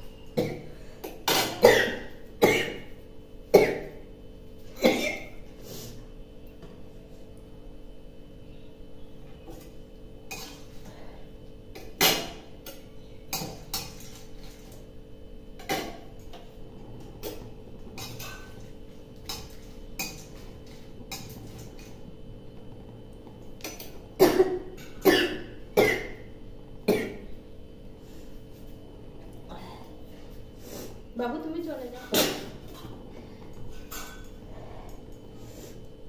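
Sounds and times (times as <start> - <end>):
woman coughing: 1.3 - 2.9, 3.6 - 4.0, 4.8 - 5.3, 24.2 - 26.2, 26.9 - 27.2.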